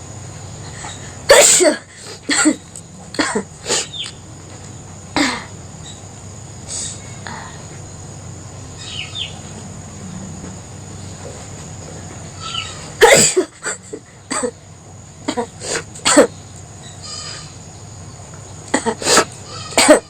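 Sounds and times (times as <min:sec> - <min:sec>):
person sneezing: 0:13.0 - 0:14.5, 0:18.8 - 0:20.0.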